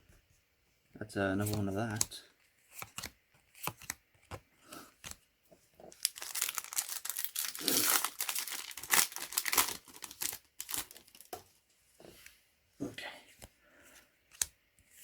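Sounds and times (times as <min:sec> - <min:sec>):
foil pack tearing and crinkling: 0:05.9 - 0:11.3.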